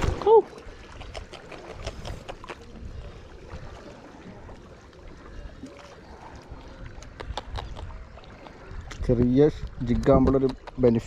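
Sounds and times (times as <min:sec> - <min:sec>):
water lapping: 0:00.0 - 0:11.0
wind buffeting microphone: 0:00.0 - 0:11.0.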